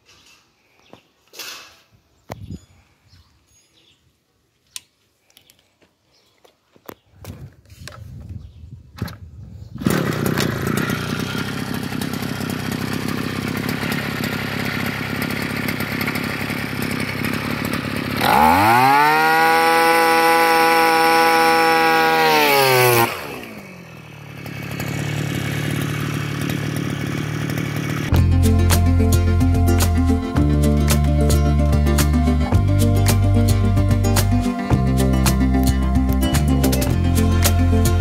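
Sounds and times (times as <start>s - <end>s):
small petrol engine idling and revving: 9.6s - 38.0s.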